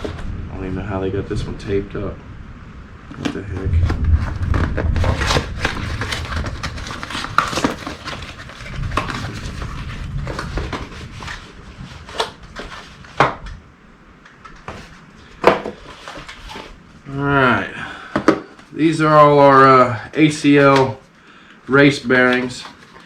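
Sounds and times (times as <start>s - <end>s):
cardboard box rustling and scraping: 3.2s - 13.5s, 14.6s - 16.8s.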